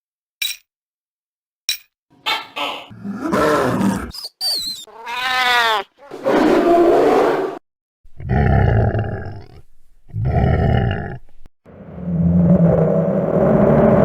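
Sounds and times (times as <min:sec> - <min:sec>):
creature growling roars: 0:02.9 - 0:04.2, 0:08.2 - 0:11.2
creature screech: 0:02.9 - 0:07.6.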